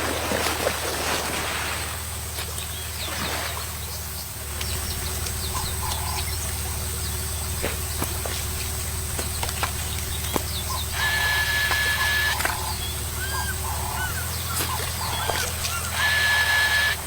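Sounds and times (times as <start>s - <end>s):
low motor hum: 0.0s - 17.0s
high bird chirps: 9.9s - 17.0s.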